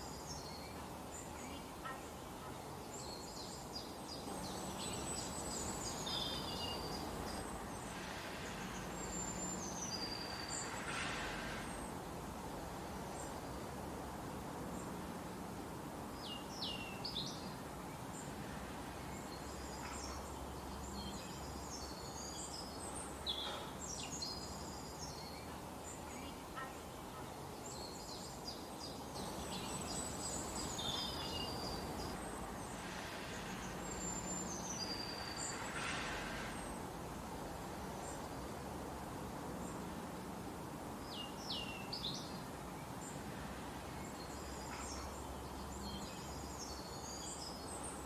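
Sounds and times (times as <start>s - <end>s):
songbirds chirping: 0.0s - 48.0s
steady rushing background noise: 4.0s - 23.2s.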